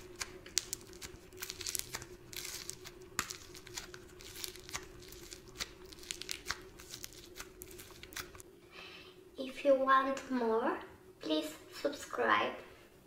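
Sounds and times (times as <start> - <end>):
slime crackling and tearing: 0.0 - 8.4.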